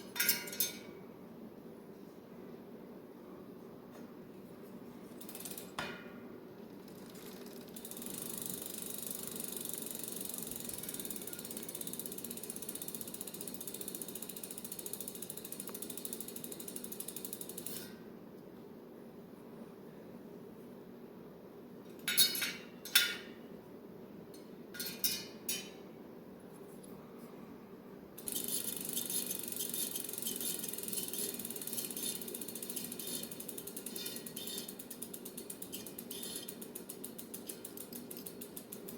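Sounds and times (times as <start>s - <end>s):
bicycle freewheel ticking: 5.1s - 5.8s, 6.7s - 17.9s, 28.2s - 38.9s.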